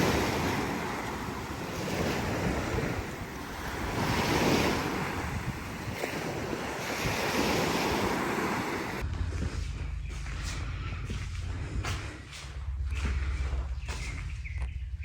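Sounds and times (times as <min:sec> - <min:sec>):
surf washing in: 0:00.0 - 0:09.0
low wind rumble: 0:00.0 - 0:15.0
wind buffeting microphone: 0:00.0 - 0:15.0.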